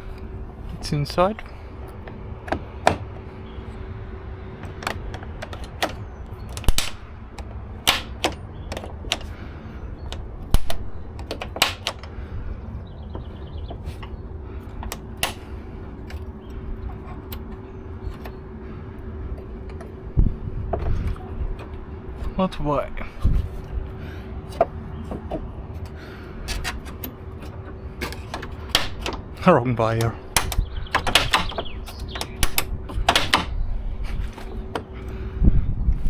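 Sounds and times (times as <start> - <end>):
faint hum: 0.0 - 36.0
clicks and knocks of tools: 4.6 - 9.4, 10.1 - 12.1, 13.1 - 18.4, 19.4 - 19.9, 24.5 - 29.3, 30.0 - 33.5.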